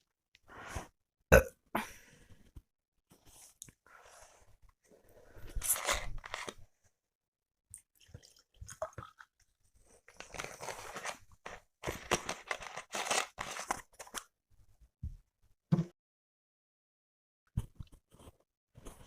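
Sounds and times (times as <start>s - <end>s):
chewing and wet mouth sounds: 7.7s - 9.5s.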